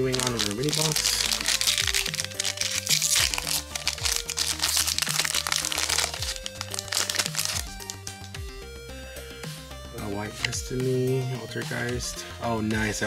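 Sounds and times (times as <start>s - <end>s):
foil wrapper crinkling: 0.0s - 8.4s
background music with sustained notes: 0.0s - 13.0s.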